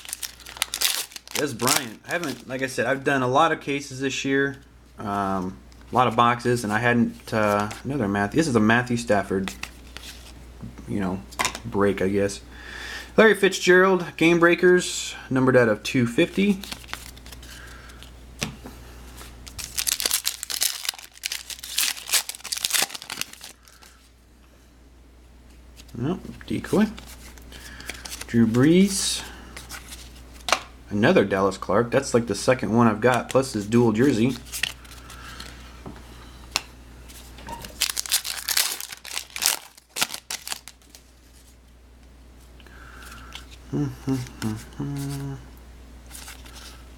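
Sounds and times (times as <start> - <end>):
plastic packaging crinkling and tearing: 0.0 - 2.7, 16.3 - 17.6, 19.4 - 24.0, 33.3 - 35.6, 37.6 - 41.5.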